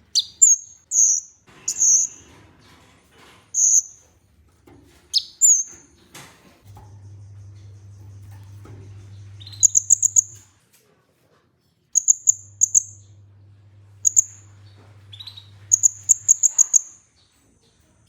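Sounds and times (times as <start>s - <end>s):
low electrical hum: 0.0s - 10.7s, 11.9s - 18.0s
bird high sharp chips: 0.1s - 2.2s, 5.2s - 5.7s.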